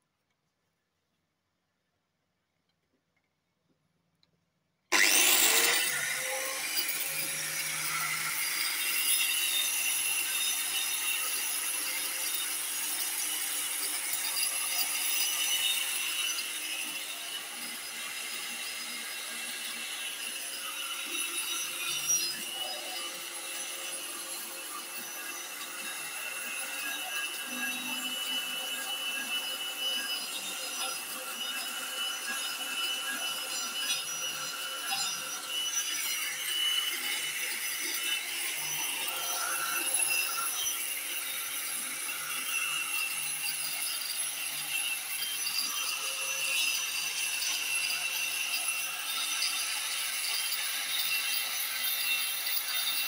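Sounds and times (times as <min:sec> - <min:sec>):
motorised cutter whining: 0:04.9 - 0:11.4
cutter rasping on wood: 0:04.9 - 0:13.3.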